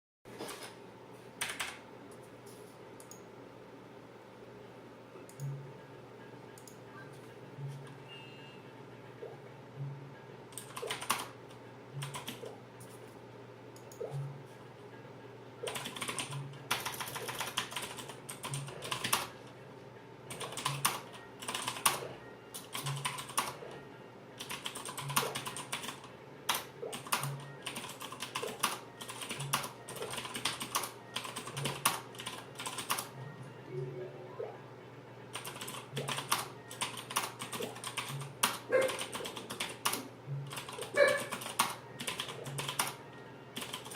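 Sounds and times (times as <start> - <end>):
clicky mechanical keyboard typing: 1.4 - 1.8, 10.5 - 11.4, 12.0 - 12.6, 15.6 - 19.4, 20.3 - 23.8, 24.4 - 33.1, 35.3 - 43.0, 43.6 - 43.9.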